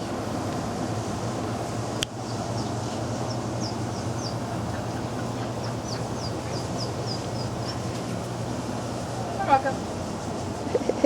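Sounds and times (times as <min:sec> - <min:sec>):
low background hum: 0:00.0 - 0:11.0
high falling bird chirps: 0:02.2 - 0:08.0.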